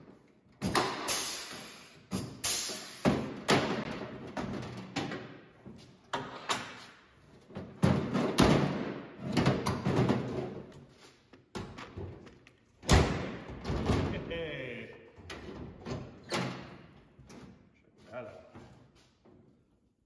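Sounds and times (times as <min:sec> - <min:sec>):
toolbox knocks and thuds: 0:07.5 - 0:10.6.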